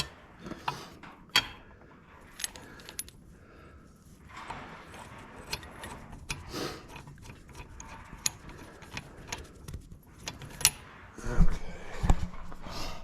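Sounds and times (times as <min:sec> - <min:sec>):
metal tools clinking and scraping: 0:00.0 - 0:03.2, 0:04.2 - 0:11.0.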